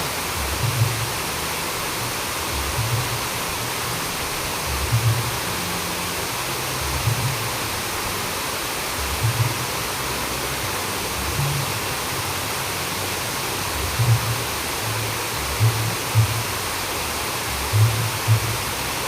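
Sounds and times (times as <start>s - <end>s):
water rushing: 0.0s - 19.0s
soft low thuds: 0.4s - 1.3s, 2.5s - 3.5s, 4.6s - 5.5s, 6.8s - 7.7s, 9.0s - 9.8s, 11.2s - 12.0s, 13.7s - 14.6s, 15.4s - 16.6s, 17.6s - 18.7s.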